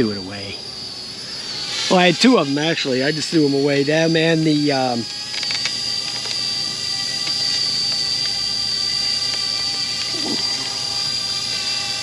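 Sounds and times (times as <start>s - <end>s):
drone propellers whining: 0.0s - 12.0s.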